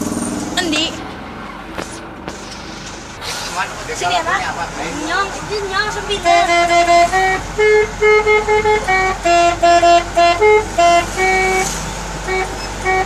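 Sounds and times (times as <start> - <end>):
air horn playing a tune: 6.0 - 13.0.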